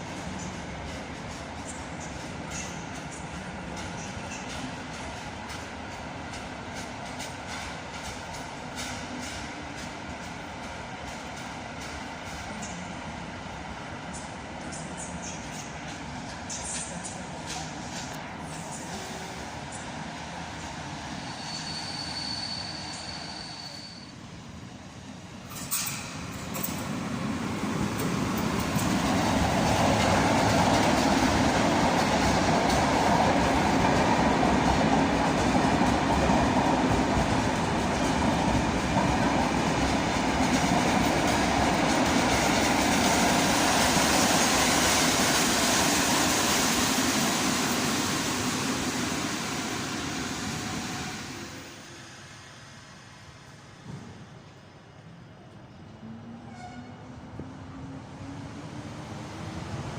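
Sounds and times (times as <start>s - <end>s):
train rumble and wheel noise: 0.0s - 59.9s.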